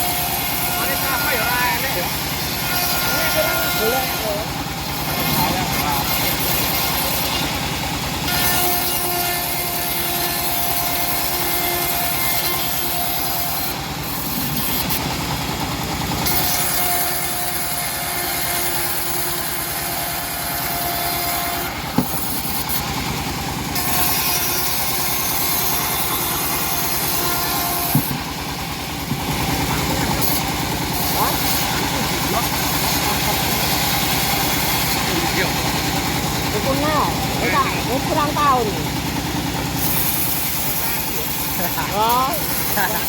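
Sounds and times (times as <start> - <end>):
bandsaw sawmill cutting log: 0.0 - 43.0
thin whining saw tone: 0.0 - 43.0
sharp knocks: 21.9 - 22.4.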